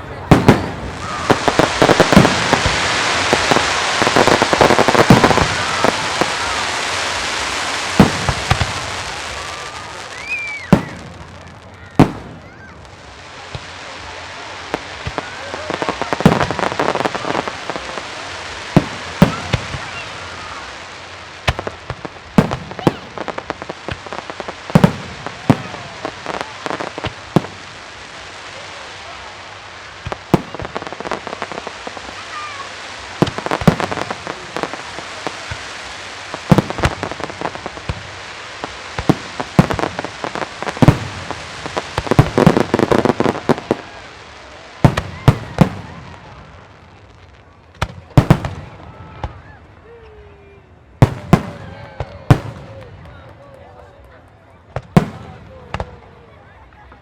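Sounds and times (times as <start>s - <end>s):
dense firework crackling: 0.0s - 57.0s
firework shells booming: 0.1s - 12.6s, 15.0s - 20.2s, 21.4s - 27.7s, 33.0s - 44.0s, 51.0s - 53.3s.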